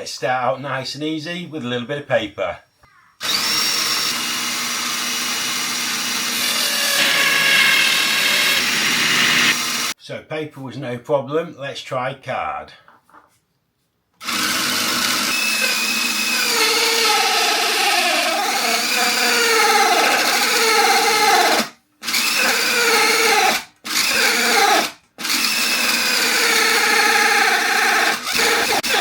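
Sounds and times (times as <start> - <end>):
small electric motor whining: 3.2 - 10.0, 14.2 - 29.0.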